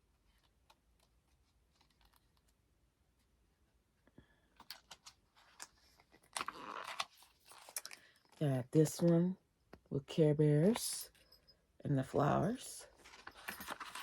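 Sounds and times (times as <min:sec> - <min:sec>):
cards clicking and rustling: 0:04.6 - 0:08.4.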